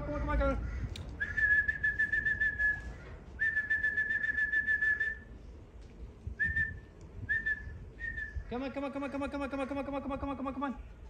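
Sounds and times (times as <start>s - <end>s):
fast faint clicks: 0.9s - 1.2s
long steady whistles: 1.2s - 5.4s, 6.4s - 8.5s.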